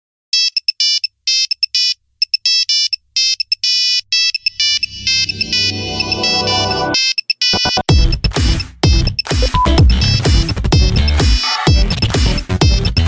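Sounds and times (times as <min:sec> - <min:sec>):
electronic beeping ringtone melody: 0:00.4 - 0:07.9, 0:09.4 - 0:10.3
low electronic swell: 0:04.6 - 0:07.0.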